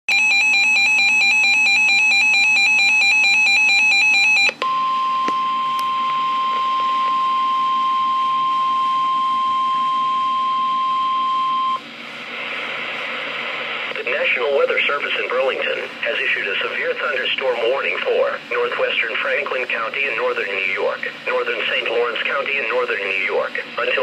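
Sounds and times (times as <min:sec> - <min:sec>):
steady warning alarm tone: 0:00.1 - 0:11.8
faint radio hiss: 0:12.0 - 0:24.0.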